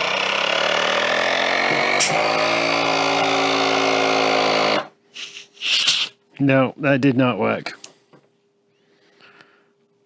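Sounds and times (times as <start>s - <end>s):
electric air pump humming: 0.0s - 6.1s.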